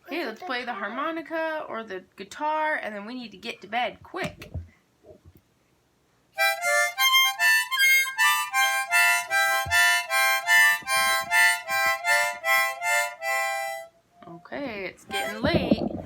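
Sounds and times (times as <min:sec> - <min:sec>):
harmonica chords: 0:06.4 - 0:14.3, 0:15.1 - 0:15.8.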